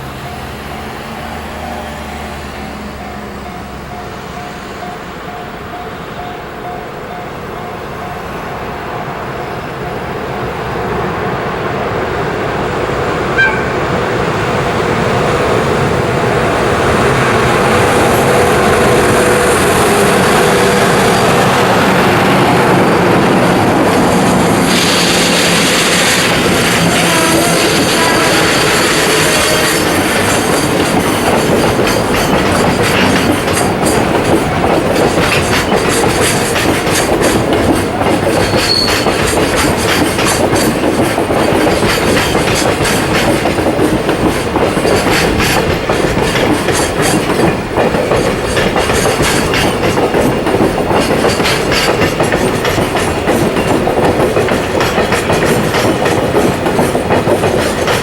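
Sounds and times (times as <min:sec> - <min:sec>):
freight train rolling past: 0:00.0 - 0:58.0
wheels clattering over rail joints: 0:25.6 - 0:58.0.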